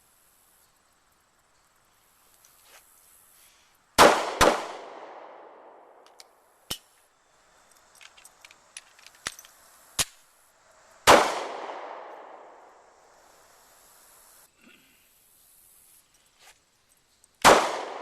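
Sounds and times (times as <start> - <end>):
pistol shots echoing: 4.0 - 5.9, 11.1 - 12.6, 17.4 - 18.0
small clicks and knocks: 6.0 - 6.8, 7.7 - 10.2.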